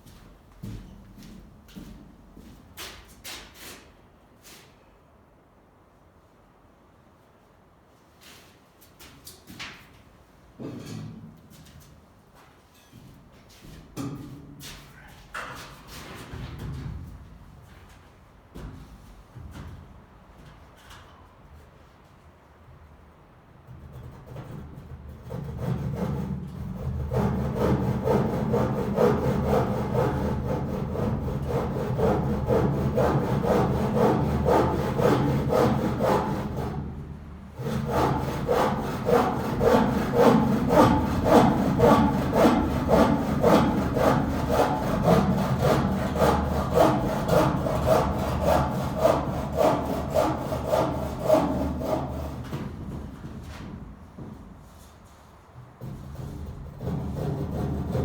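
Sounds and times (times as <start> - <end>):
hand saw cutting wood: 25.2 - 37.0, 37.6 - 52.9, 56.1 - 58.0.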